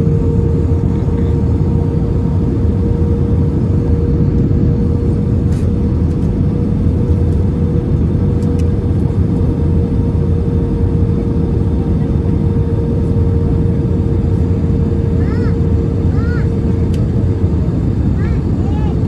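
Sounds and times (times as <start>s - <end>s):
engine and airflow rumble: 0.0s - 19.0s
steady hum: 0.0s - 19.0s.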